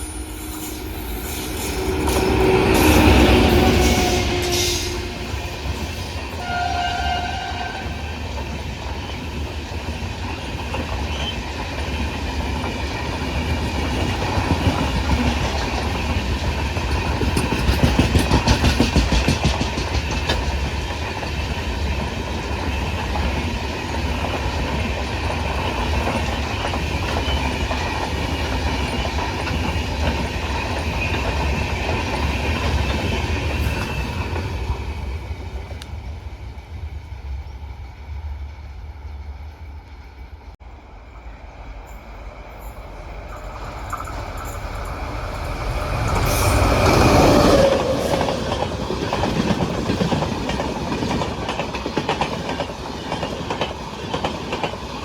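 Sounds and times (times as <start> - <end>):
train horn: 0.0 - 8.3
train rumbling past: 0.0 - 55.0.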